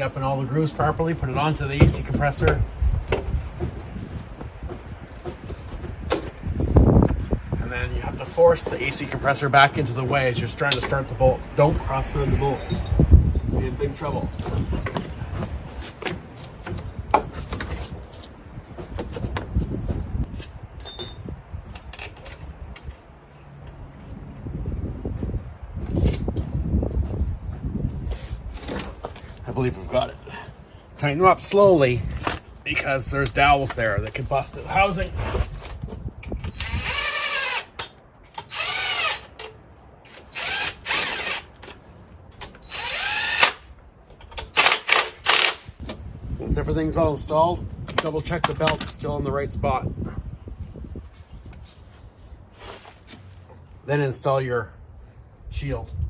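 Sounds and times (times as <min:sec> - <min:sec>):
metal clinks and knocks: 0:12.5 - 0:15.0, 0:20.3 - 0:22.5
high metallic ring: 0:20.8 - 0:21.3
cordless power tool whining: 0:36.4 - 0:39.5, 0:40.1 - 0:41.6, 0:42.6 - 0:43.7.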